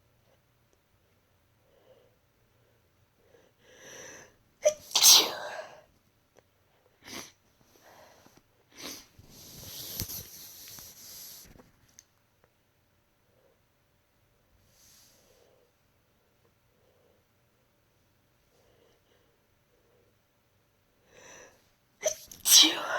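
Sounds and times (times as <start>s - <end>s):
woman sneezing: 4.6s - 5.8s, 22.0s - 22.9s.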